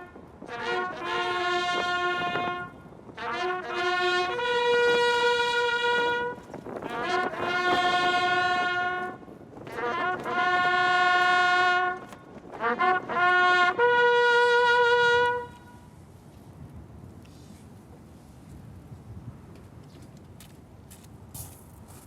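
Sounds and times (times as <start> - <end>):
bugle call: 0.0 - 15.9.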